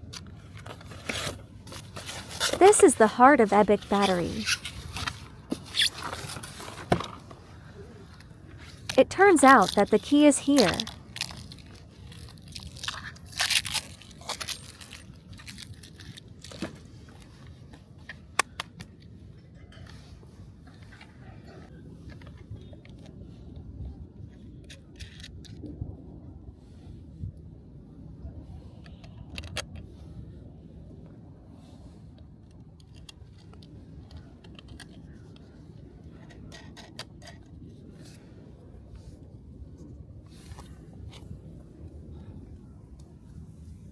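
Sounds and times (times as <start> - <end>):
packaging rustling and crunching: 10.6 - 16.6.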